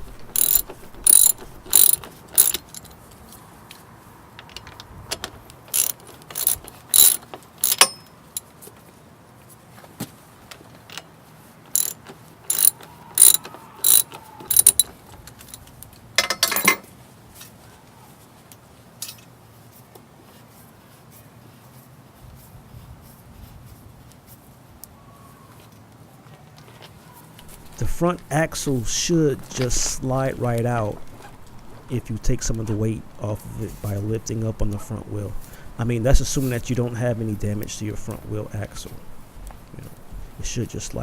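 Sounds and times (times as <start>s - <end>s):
ratchet wrench clicking: 0.0s - 3.0s, 5.7s - 8.5s, 11.7s - 15.6s.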